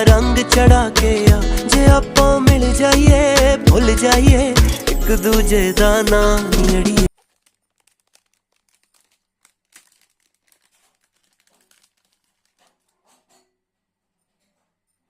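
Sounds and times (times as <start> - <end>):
packaging crinkling: 7.1 - 13.2.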